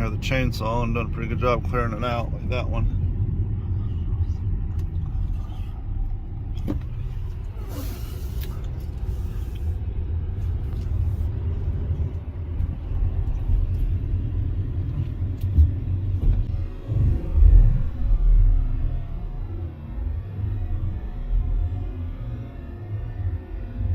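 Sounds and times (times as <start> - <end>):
car engine and road rumble: 0.0 - 23.9
brief hiss: 7.6 - 9.8.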